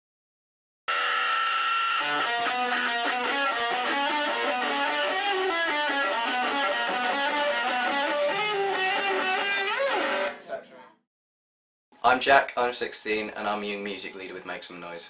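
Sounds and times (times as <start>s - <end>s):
guitar melody: 1.9s - 10.7s.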